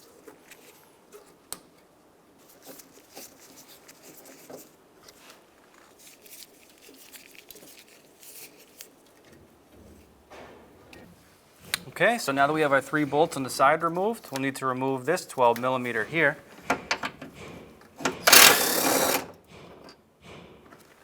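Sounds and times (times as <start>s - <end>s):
hand tool clicking and scraping: 16.7s - 20.0s.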